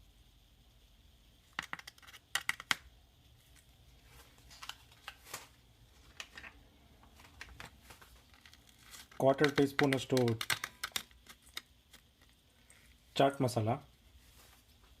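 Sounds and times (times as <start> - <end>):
measuring spoon clicking on containers: 1.5 - 2.9, 9.2 - 12.1.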